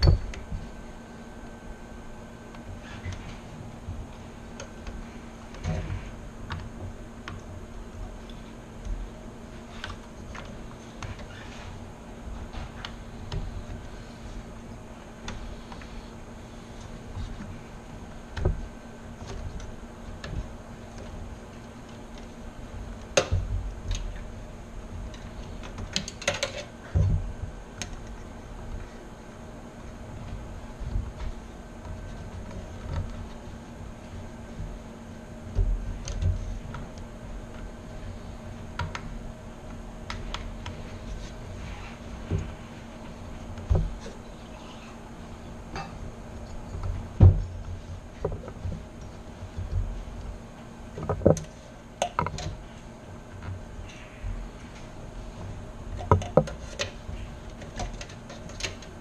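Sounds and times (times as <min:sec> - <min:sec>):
steady low hum: 0:00.0 - 0:59.0
clicks and knocks of hard parts: 0:25.1 - 0:27.2, 0:56.0 - 0:59.0.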